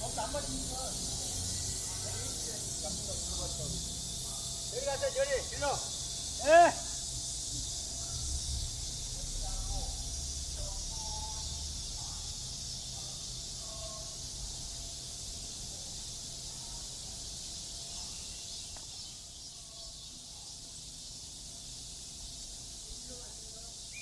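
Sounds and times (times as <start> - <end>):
faint voices: 0.0 - 18.4
low city rumble: 0.0 - 23.7
cicadas droning: 0.0 - 24.0.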